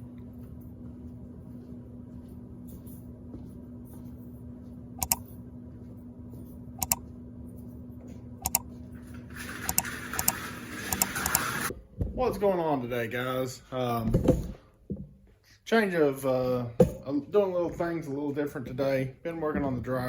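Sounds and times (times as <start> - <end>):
low mechanical hum: 0.0 - 20.0
sharp double clicks: 5.0 - 5.2, 6.8 - 7.0, 8.4 - 8.6.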